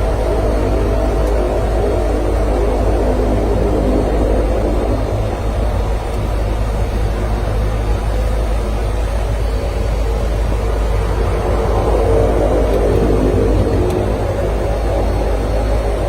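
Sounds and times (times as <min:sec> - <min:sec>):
turboprop engines droning: 0:00.0 - 0:16.0.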